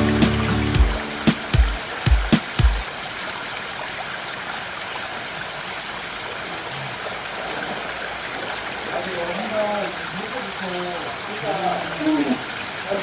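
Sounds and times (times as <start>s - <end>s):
heavy music beats: 0.0s - 2.8s
stream flowing: 0.0s - 13.0s.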